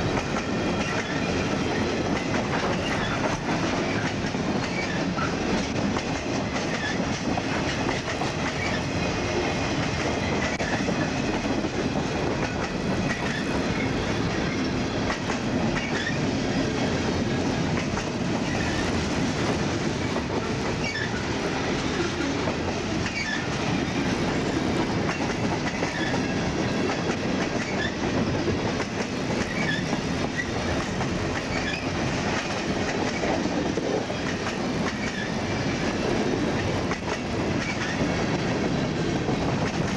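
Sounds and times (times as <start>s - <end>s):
freight train cars rolling: 0.0s - 39.9s
high wheel squeals: 20.8s - 21.3s.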